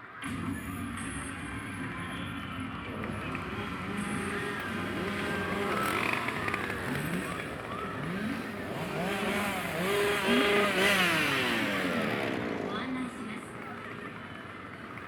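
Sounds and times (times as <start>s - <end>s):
chainsaw engine revving: 3.0s - 12.8s.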